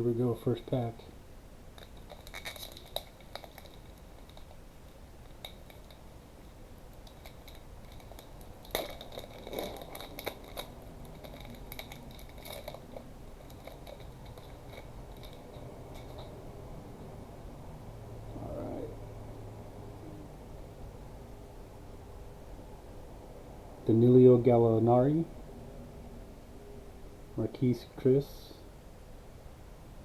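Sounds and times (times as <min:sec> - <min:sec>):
cards being handled: 0:01.8 - 0:04.6, 0:07.0 - 0:16.4
wrapper tearing and crinkling: 0:01.8 - 0:04.6, 0:06.9 - 0:16.4.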